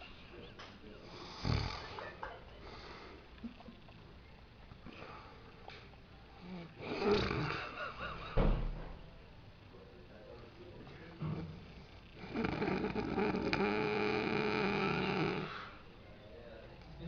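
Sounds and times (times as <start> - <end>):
quiet breathing: 0.0 - 3.4, 4.2 - 7.6, 10.2 - 16.7
man snoring: 1.1 - 2.0, 6.4 - 7.8, 12.2 - 15.8.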